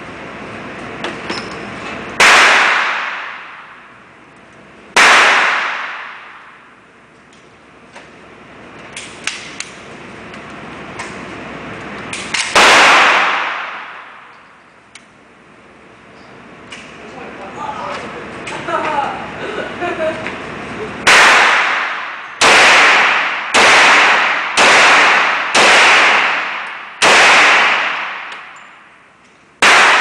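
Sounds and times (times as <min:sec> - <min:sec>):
gunshots echoing: 0:02.2 - 0:03.9, 0:04.9 - 0:06.7, 0:12.2 - 0:14.3, 0:21.0 - 0:28.6, 0:29.6 - 0:30.0.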